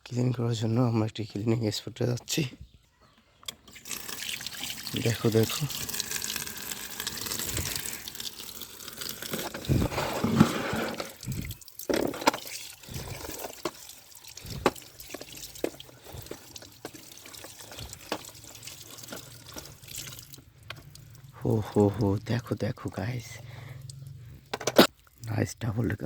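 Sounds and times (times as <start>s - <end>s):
water running and splashing: 3.7s - 25.4s.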